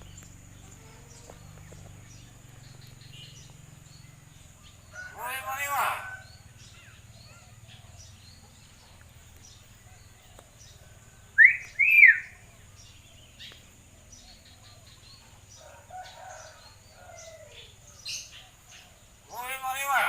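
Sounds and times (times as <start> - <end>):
soft bird calls: 0.0 - 20.0
bird whistling: 11.4 - 12.4.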